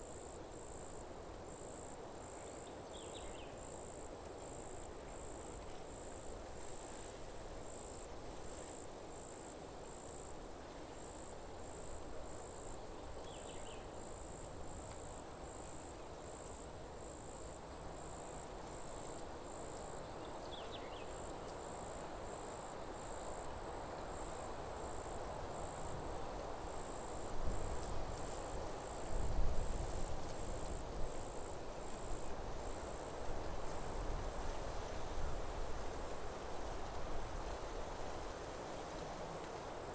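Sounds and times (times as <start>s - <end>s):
forest ambience hiss: 0.0s - 39.9s
insect chirping: 17.1s - 23.5s.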